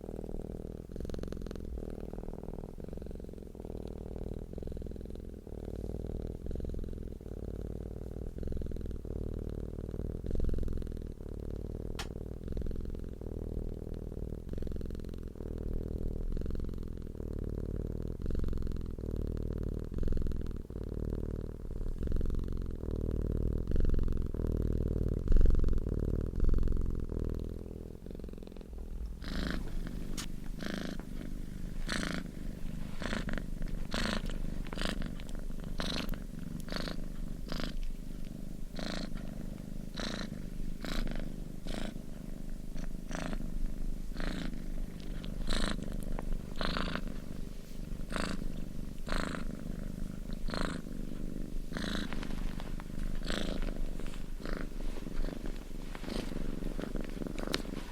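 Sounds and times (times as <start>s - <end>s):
cat purring: 0.0s - 57.9s.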